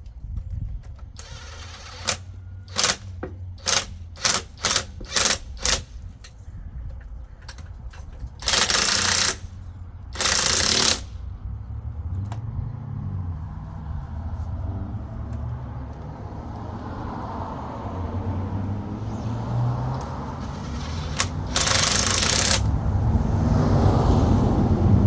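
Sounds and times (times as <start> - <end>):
impact wrench bursts: 1.2 - 6.0, 8.4 - 11.2, 19.9 - 22.8.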